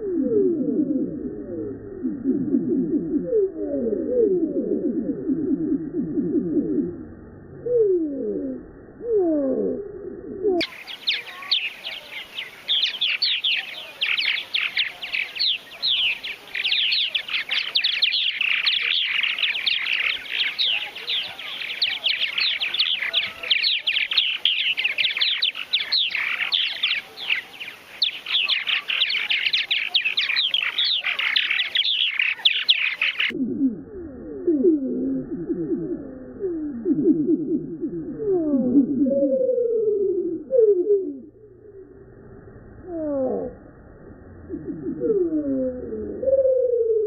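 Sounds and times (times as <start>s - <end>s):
birds chattering: 10.6s - 33.4s.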